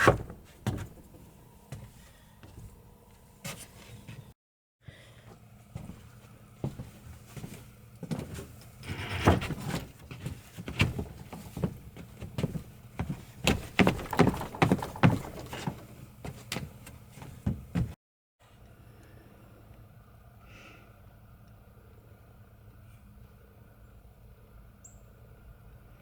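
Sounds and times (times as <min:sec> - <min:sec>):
knocks on wooden deck boards: 0:12.4 - 0:16.7.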